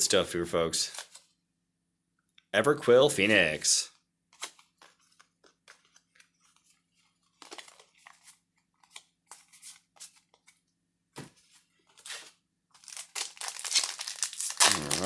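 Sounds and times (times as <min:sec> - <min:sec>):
cards rustling and sliding: 0:00.9 - 0:01.4, 0:04.3 - 0:15.0.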